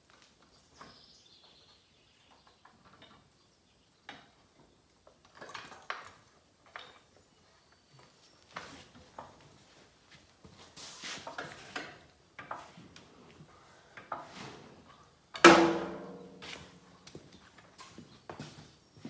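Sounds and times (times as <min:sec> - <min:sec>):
metal clanks: 0:15.4 - 0:16.6.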